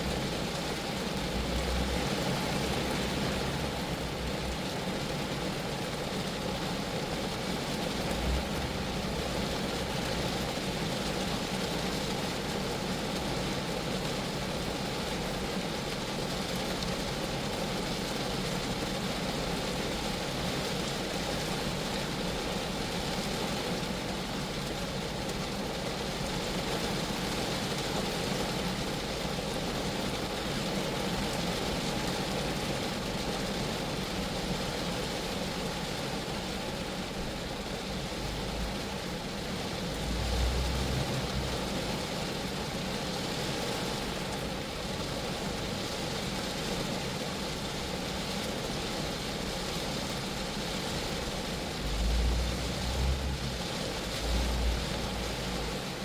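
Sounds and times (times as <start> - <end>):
rain falling on a car: 0.0 - 56.0.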